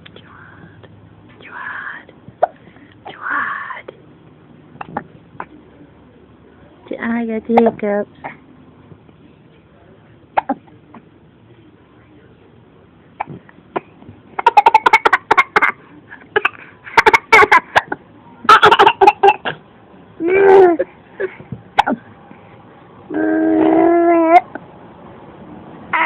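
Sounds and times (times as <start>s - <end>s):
boy hiccuping and coughing: 10.4s - 10.7s, 13.2s - 19.6s, 20.3s - 22.0s.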